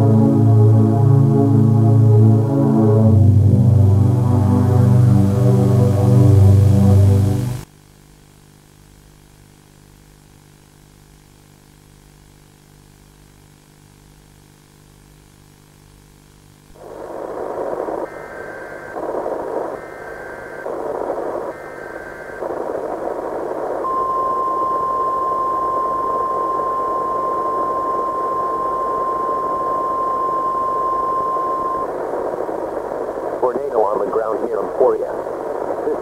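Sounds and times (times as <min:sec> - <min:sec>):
long steady warning tone: 0:00.0 - 0:07.7, 0:16.8 - 0:36.0
radio static: 0:16.8 - 0:36.0.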